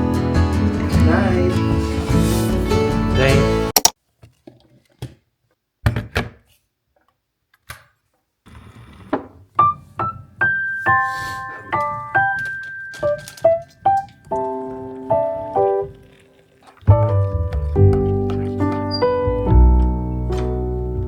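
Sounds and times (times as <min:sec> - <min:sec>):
piano music: 0:09.6 - 0:16.2, 0:16.8 - 0:21.0.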